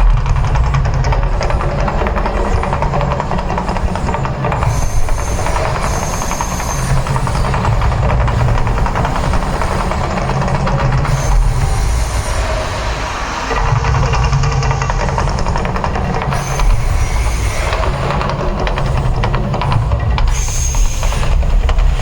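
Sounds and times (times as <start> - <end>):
deep rumble: 0.0 - 22.0
rushing hiss: 4.6 - 15.6, 16.3 - 21.7.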